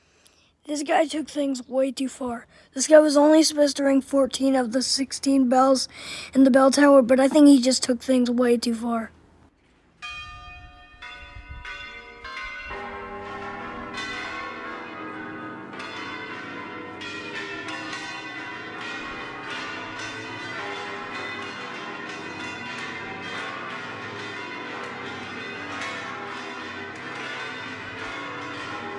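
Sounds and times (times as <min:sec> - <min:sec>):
tower bells clanging: 0:10.0 - 0:28.9.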